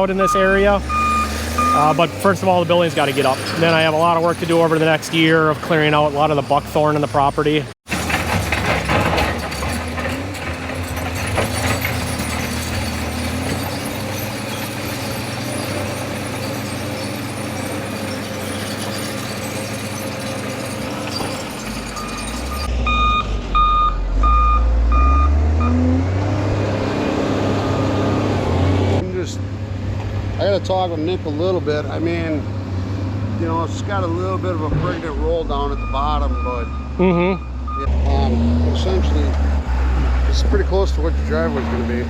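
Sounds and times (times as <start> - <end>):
backup alarm beeping: 0.0 - 2.2, 22.0 - 25.8, 35.7 - 37.9
diesel engine of earthmover: 0.0 - 42.0.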